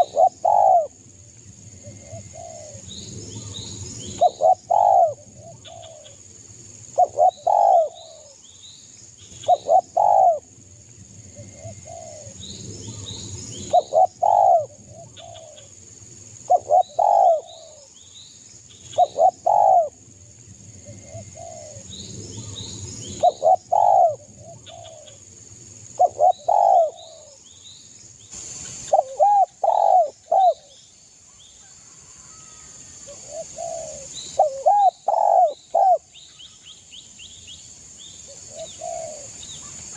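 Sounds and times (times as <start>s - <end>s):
dove cooing: 0.0s - 1.0s, 1.8s - 6.2s, 7.0s - 8.4s, 9.4s - 10.4s, 11.4s - 15.7s, 16.5s - 17.9s, 18.9s - 20.0s, 20.8s - 21.8s, 22.4s - 25.2s, 26.0s - 27.4s, 28.8s - 30.8s, 32.2s - 36.1s, 38.5s - 39.8s
high insect-like whine: 0.0s - 39.9s.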